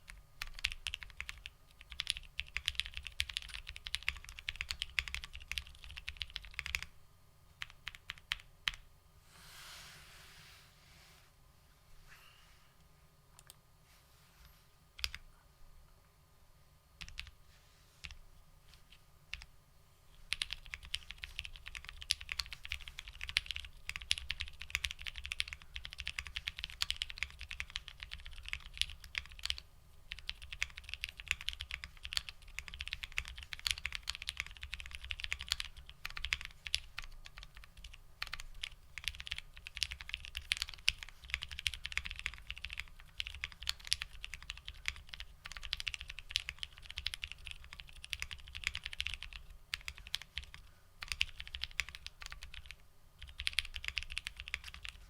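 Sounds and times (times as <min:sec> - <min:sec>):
mechanical keyboard typing: 0:00.0 - 0:06.9, 0:07.6 - 0:08.8, 0:15.0 - 0:15.2, 0:17.0 - 0:17.3, 0:20.3 - 0:55.0.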